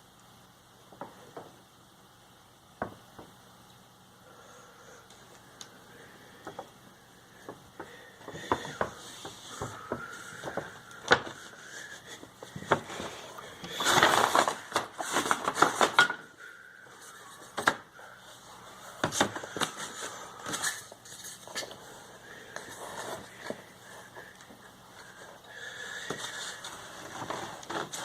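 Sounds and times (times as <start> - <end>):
crackling and rattling: 7.4 - 16.4.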